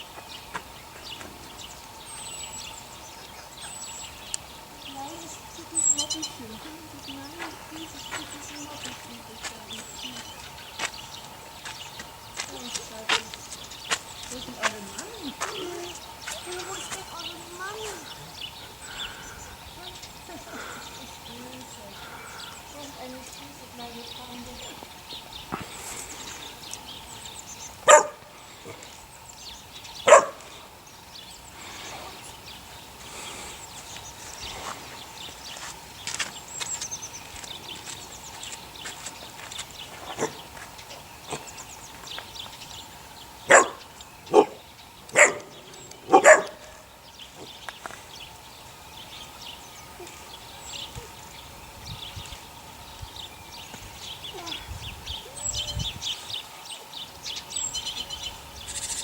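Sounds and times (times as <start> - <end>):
dog barking: 27.8 - 28.2, 30.0 - 30.4, 43.5 - 45.5, 46.1 - 46.7.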